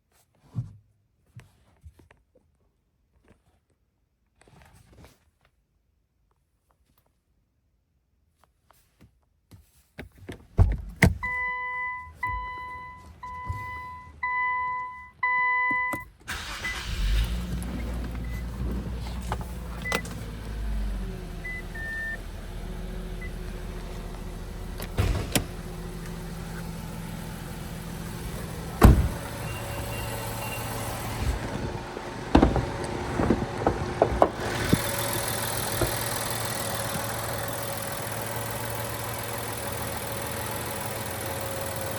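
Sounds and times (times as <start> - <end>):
car chime beeps: 11.2 - 16.9, 21.4 - 22.3, 27.8 - 31.4
car engine starting and idling: 16.2 - 41.9.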